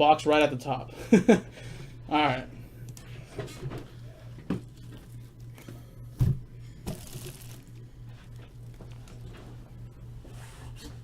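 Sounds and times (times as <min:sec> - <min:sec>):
steady low hum: 0:00.0 - 0:11.0
plastic wrap tearing and crinkling: 0:06.9 - 0:07.8.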